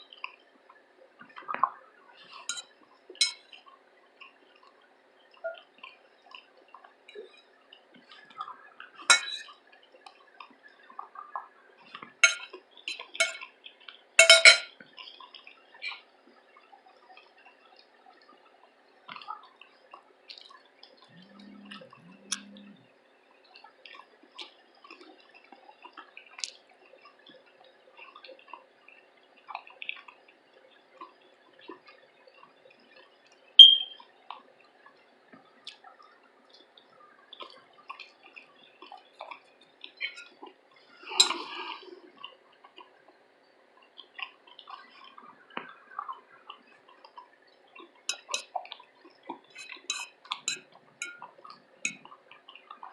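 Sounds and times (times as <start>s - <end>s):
utensil clinking against dish: 2.5s - 3.4s, 9.1s - 9.5s, 12.2s - 13.4s, 14.2s - 14.7s, 41.2s - 41.5s, 48.1s - 48.5s, 49.6s - 51.3s.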